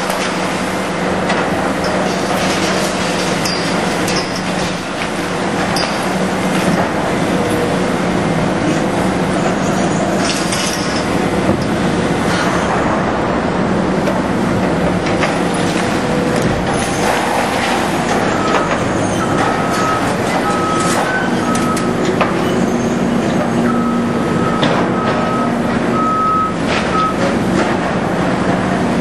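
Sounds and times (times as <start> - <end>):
heavy demolition machinery running: 0.0 - 29.0
debris clanking and scraping: 1.3 - 7.0, 9.4 - 11.2
reversing alarm beeping: 18.3 - 27.2.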